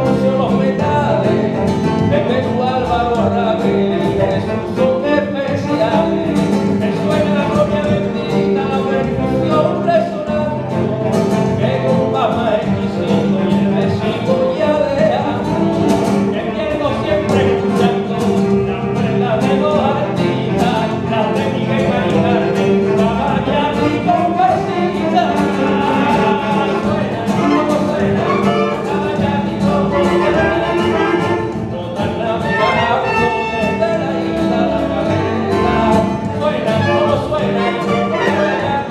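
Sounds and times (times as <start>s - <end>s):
live band playing rumba: 0.0s - 38.9s
person singing: 0.0s - 38.9s.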